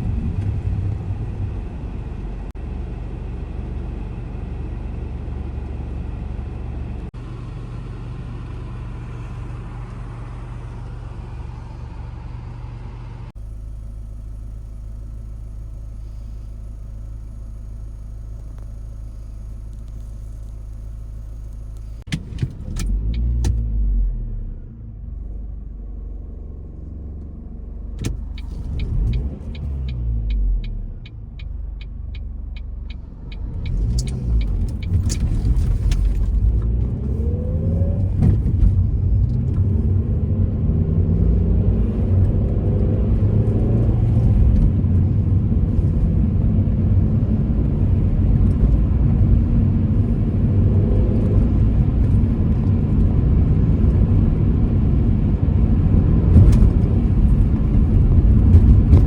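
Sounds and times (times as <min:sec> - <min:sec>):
car engine idling: 0:05.6 - 0:22.3
car pulling away: 0:05.6 - 0:59.0.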